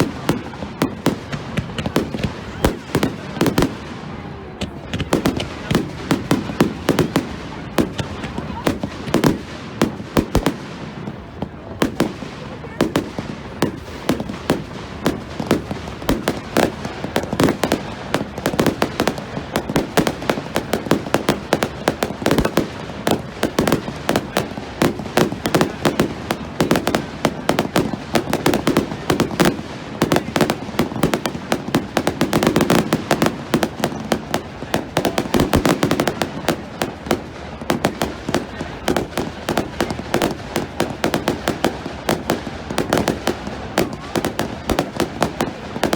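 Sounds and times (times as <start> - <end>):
fireworks bangs: 0.0 - 45.9
fireworks crackling and popping: 0.0 - 45.9.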